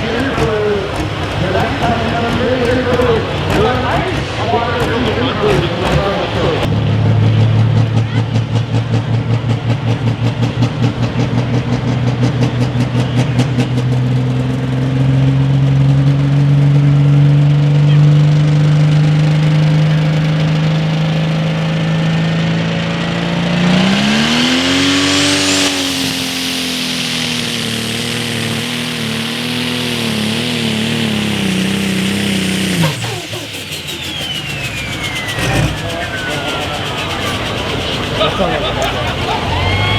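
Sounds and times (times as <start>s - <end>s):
turbo whine: 0.0s - 6.8s, 23.3s - 39.9s
diesel tractor engine at full throttle: 0.0s - 39.9s.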